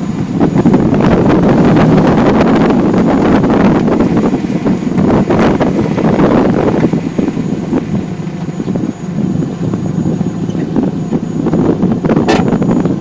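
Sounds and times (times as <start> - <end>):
road and tyre rumble: 0.0 - 13.0
sharp metallic knocks: 12.2 - 12.6.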